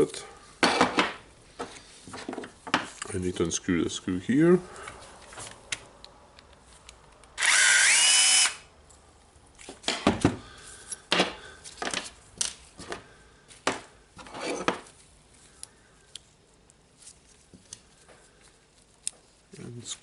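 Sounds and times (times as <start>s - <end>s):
electric screwdriver whine: 7.4s - 8.7s.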